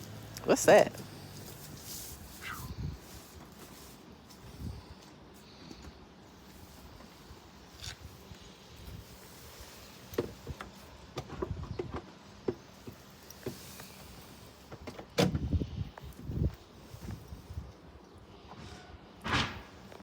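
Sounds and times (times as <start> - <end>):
knocks and clunks of handling: 10.1 - 13.6
loud heavy thud: 19.2 - 19.8.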